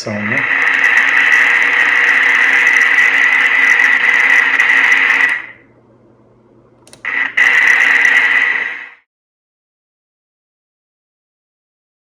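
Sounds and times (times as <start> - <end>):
radio crackling: 0.0 - 5.6, 6.9 - 9.1
radio static hiss: 0.0 - 5.6, 6.9 - 9.1
faint hum: 0.0 - 9.1.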